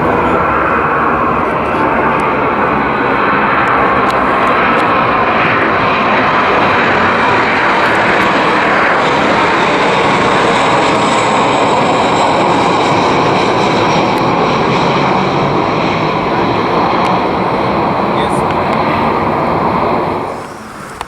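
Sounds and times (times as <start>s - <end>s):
airliner engines passing: 0.0s - 21.0s.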